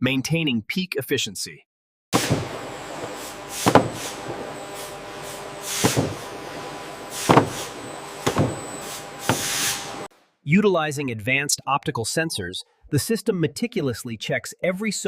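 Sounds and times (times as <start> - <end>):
machinery humming and hissing: 2.2 - 10.1.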